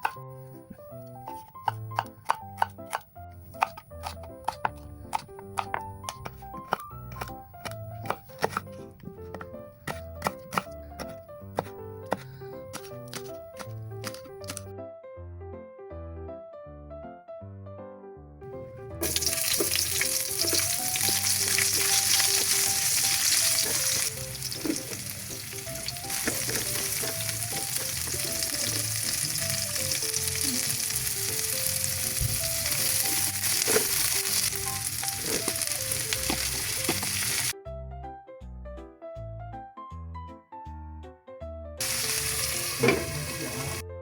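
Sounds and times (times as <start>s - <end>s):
light background music: 0.0s - 44.0s
food sizzling in hot oil: 19.0s - 37.5s, 41.8s - 43.8s.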